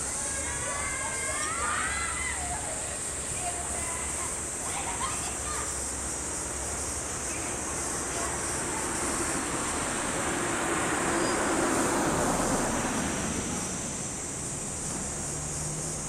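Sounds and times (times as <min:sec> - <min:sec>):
constant high hiss: 0:00.0 - 0:16.0
vehicle passing by: 0:07.9 - 0:16.0.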